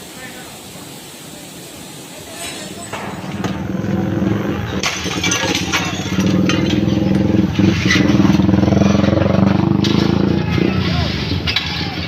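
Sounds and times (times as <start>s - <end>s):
motor engine running: 3.0s - 11.0s.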